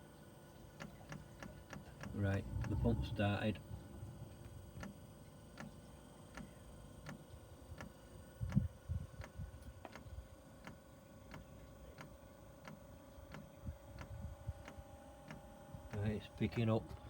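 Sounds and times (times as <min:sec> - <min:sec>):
faint steady hum: 0:00.0 - 0:17.0
fuel pump clicking: 0:00.8 - 0:03.3, 0:04.2 - 0:07.9.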